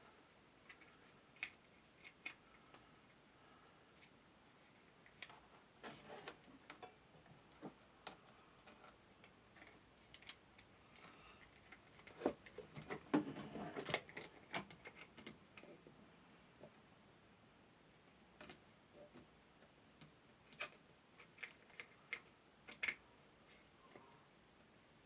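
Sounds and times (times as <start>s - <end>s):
clicks and taps of small parts: 20.0s - 23.0s.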